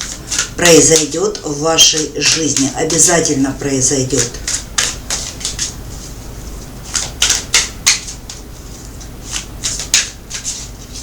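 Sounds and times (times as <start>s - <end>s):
cards snapping and slapping: 4.3s - 5.8s, 6.9s - 8.4s, 9.3s - 10.6s.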